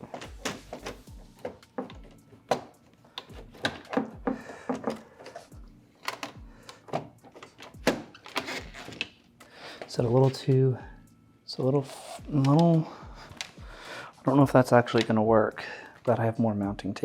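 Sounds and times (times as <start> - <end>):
hard plastic clicks and knocks: 0.1 - 5.4.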